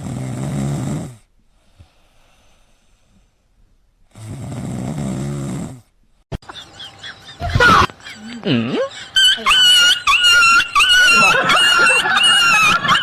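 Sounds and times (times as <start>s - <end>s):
pet snoring: 0.0s - 1.3s, 4.1s - 5.9s.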